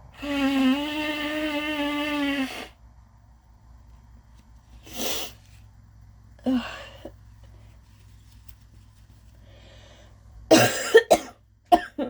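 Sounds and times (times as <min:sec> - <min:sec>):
person blowing nose: 0:00.1 - 0:02.8, 0:04.8 - 0:05.4
person sniffing: 0:04.8 - 0:05.5.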